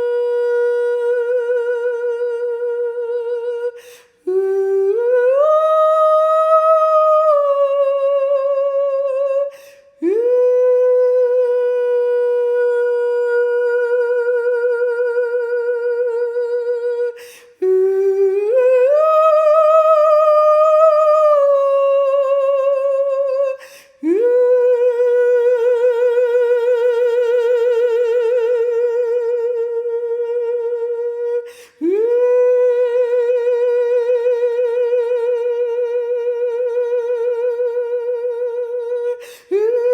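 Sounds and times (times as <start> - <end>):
woman singing long wordless notes: 0.0 - 39.9
woman breathing: 3.8 - 4.3, 9.5 - 10.0, 17.2 - 17.6, 23.6 - 24.0, 31.5 - 31.8, 39.2 - 39.5.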